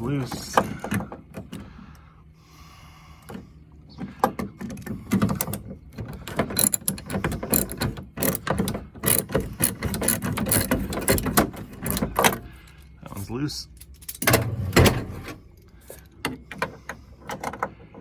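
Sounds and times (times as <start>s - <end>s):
ratchet wrench clicking: 6.5s - 11.3s.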